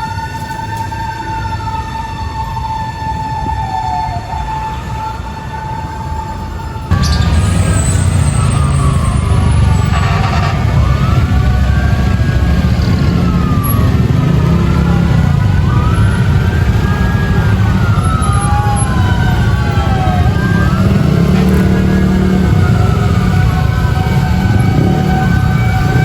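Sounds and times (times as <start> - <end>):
fire truck sirens wailing: 0.0 - 26.0
heavy low rumble: 6.9 - 25.8.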